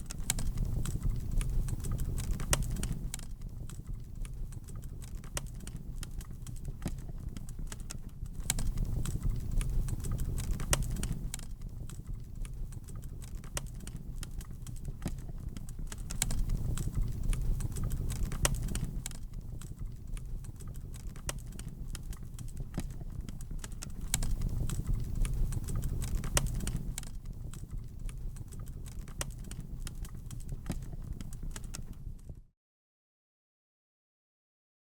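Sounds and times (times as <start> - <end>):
wood fire crackling and popping: 0.0 - 32.4.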